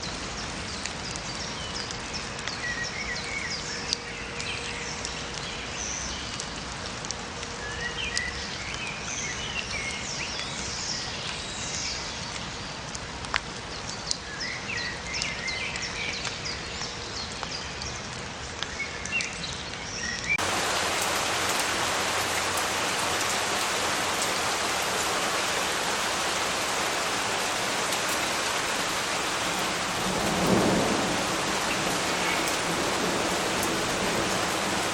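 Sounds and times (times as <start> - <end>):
light rain patter: 0.0 - 34.9
water drips: 0.0 - 34.9
songbirds chirping: 18.8 - 34.9
heavy rain hiss: 20.4 - 34.9.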